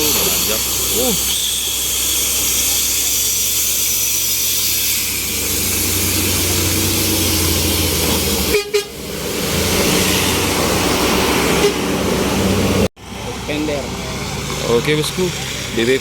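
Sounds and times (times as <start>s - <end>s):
bus engine rumbling: 0.0s - 16.0s.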